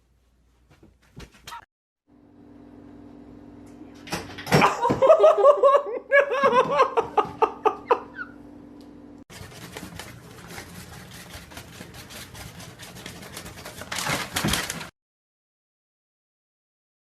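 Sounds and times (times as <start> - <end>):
steady background hum: 2.1 - 14.8
person laughing hard: 4.6 - 8.4.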